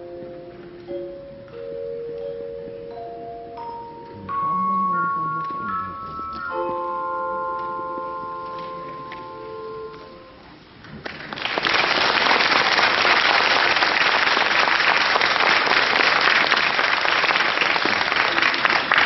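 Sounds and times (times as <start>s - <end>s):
audience applauding: 10.9s - 19.0s.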